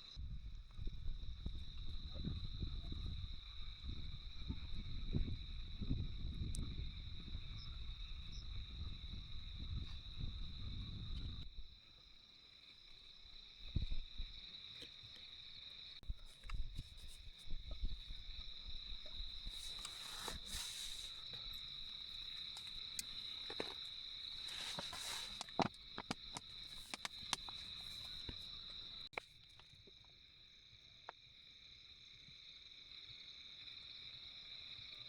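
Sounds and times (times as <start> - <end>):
insects chirring: 0.0 - 35.0.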